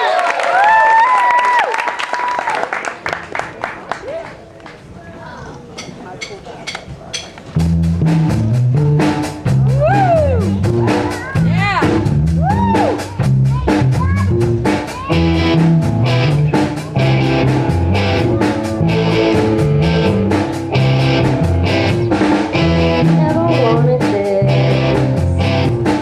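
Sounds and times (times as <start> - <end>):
drum hits: 7.2 - 26.0
live rock band playing: 7.5 - 26.0.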